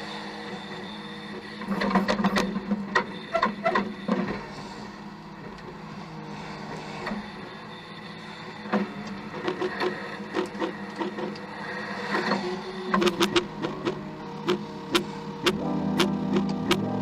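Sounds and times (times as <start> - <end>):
truck engine running: 12.4 - 17.0.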